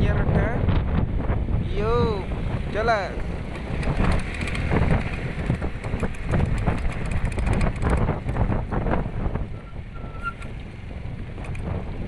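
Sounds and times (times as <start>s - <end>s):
wind buffeting microphone: 0.0s - 12.0s
crackles and knocks: 3.4s - 8.8s.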